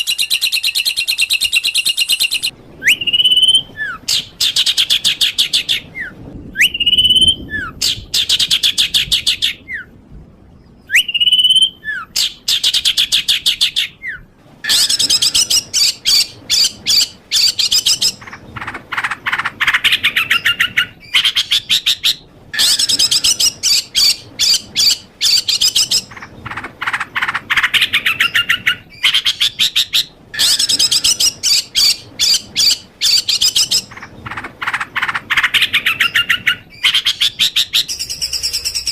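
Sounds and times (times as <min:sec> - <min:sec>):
songbird singing fast high notes: 0:35.0 - 0:38.9.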